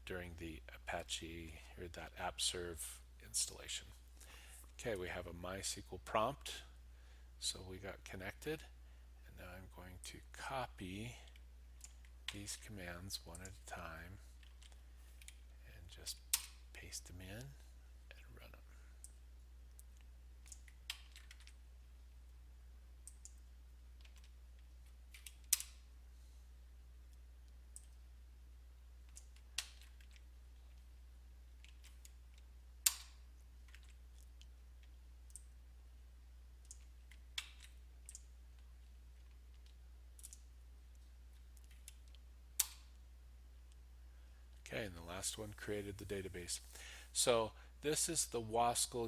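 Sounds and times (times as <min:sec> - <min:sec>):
low electrical hum: 0:00.0 - 0:49.0
computer mouse clicks: 0:19.0 - 0:21.6, 0:23.0 - 0:23.4, 0:31.6 - 0:35.5, 0:39.2 - 0:40.5
keyboard clicks: 0:19.0 - 0:21.6.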